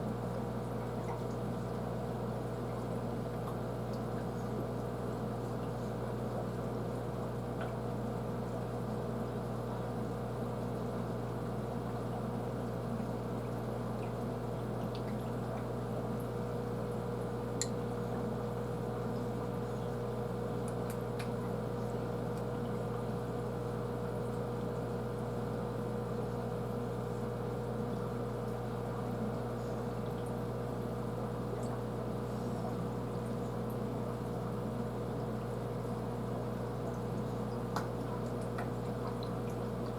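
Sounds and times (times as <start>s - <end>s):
aquarium pump humming: 0.0s - 39.9s
water trickling: 32.9s - 39.9s.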